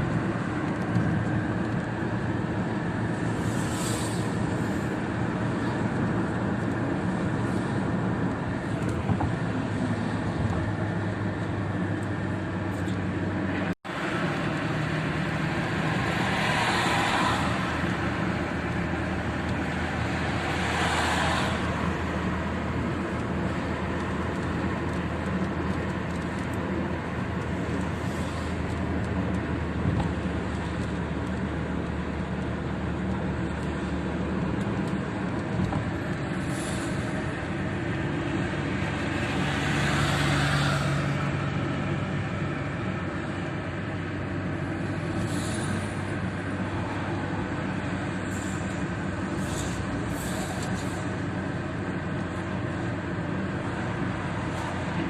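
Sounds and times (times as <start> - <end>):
road and engine noise: 0.0 - 55.0
rain on car windshield: 20.8 - 36.4.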